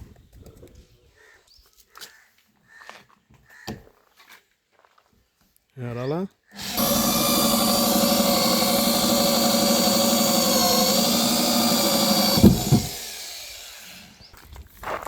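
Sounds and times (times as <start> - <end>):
drill knock: 6.6 - 14.2
electric drill running: 6.6 - 14.3.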